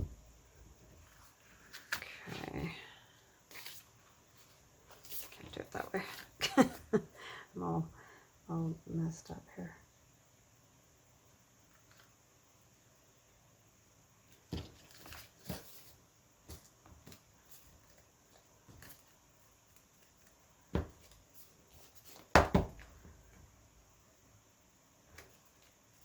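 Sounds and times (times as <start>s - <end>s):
paper rustling: 1.0s - 2.5s, 3.5s - 6.3s, 14.5s - 20.4s.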